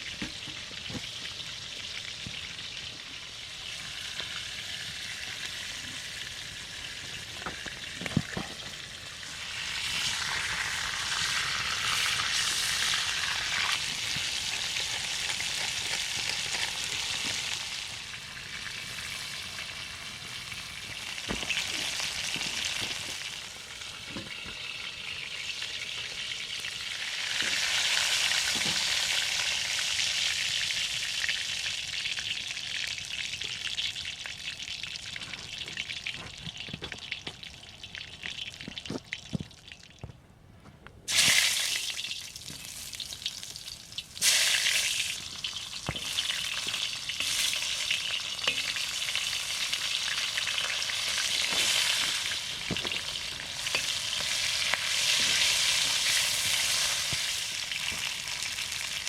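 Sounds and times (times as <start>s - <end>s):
food sizzling in a pan: 0.0s - 34.6s, 41.1s - 59.0s.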